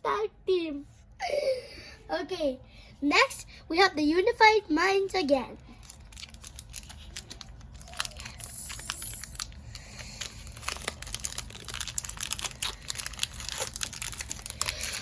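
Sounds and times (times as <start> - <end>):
foil wrapper crinkling and tearing: 5.7 - 15.0.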